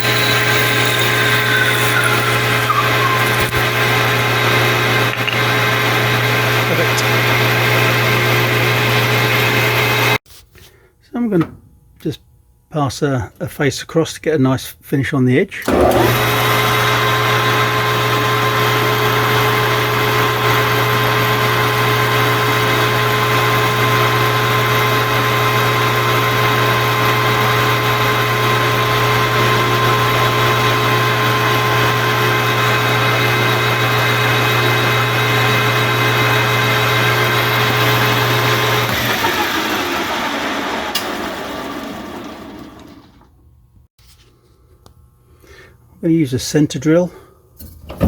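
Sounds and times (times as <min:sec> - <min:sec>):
metal lathe motor hum and whine: 0:00.0 - 0:10.2, 0:15.7 - 0:43.0.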